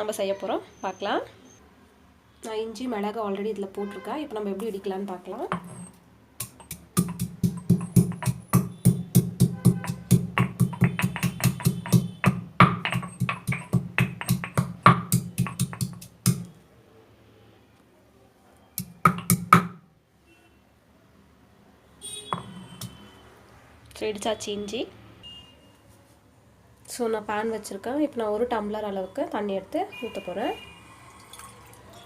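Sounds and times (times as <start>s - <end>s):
pounding spices on stone: 6.4s - 16.5s, 18.8s - 19.8s, 22.3s - 23.0s.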